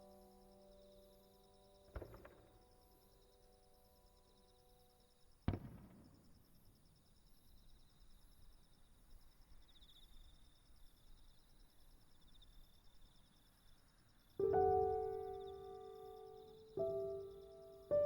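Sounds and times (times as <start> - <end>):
faint insects chirring: 0.0 - 18.0
firework bang echoing: 2.0 - 2.5, 5.5 - 6.3.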